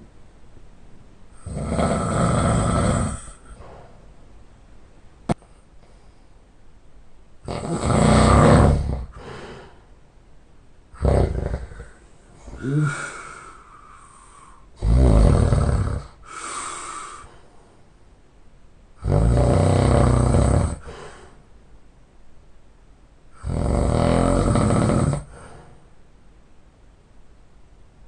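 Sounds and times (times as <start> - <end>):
person snoring loudly: 1.4 - 3.6, 7.4 - 9.8, 11.0 - 17.3, 19.0 - 21.3, 23.4 - 25.6.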